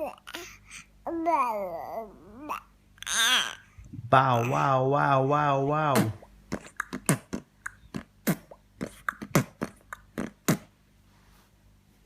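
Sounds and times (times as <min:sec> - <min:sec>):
man beatboxing: 0:05.8 - 0:10.7.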